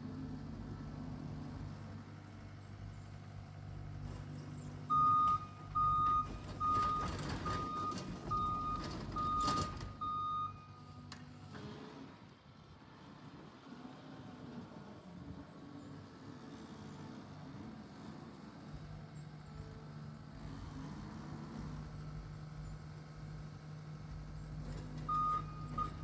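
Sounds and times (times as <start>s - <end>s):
diesel engine running: 0.0s - 12.9s, 16.2s - 26.0s
backup alarm beeping: 4.9s - 10.7s, 25.0s - 26.0s.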